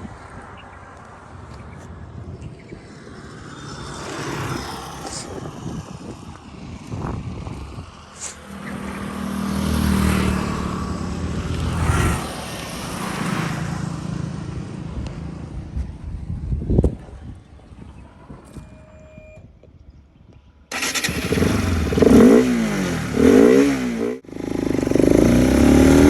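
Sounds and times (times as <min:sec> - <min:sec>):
motorcycle engine revving: 0:03.2 - 0:15.5, 0:20.7 - 0:26.0.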